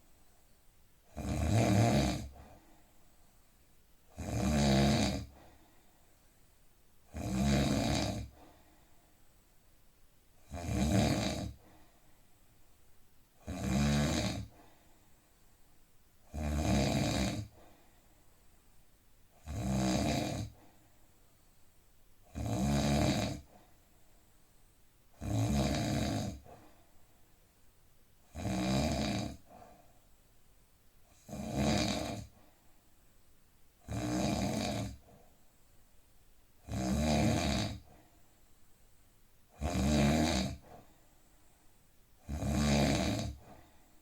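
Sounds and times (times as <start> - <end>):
man snoring: 1.1 - 2.4, 4.1 - 5.4, 7.1 - 8.3, 10.4 - 11.6, 13.4 - 14.5, 16.3 - 17.5, 19.4 - 20.6, 22.3 - 23.5, 25.2 - 26.5, 28.3 - 29.5, 31.2 - 32.3, 33.8 - 35.1, 36.6 - 37.9, 39.6 - 40.6, 42.2 - 43.5
quiet breathing: 2.1 - 4.2, 4.8 - 16.4, 17.0 - 27.8, 28.5 - 36.7, 37.6 - 44.0.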